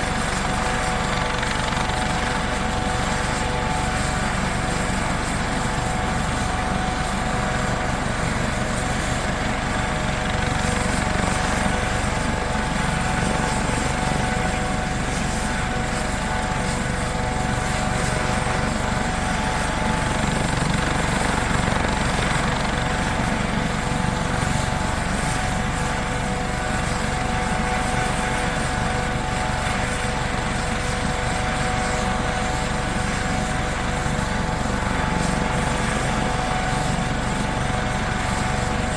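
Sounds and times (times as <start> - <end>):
helicopter rotor and engine rumble: 0.0 - 38.9.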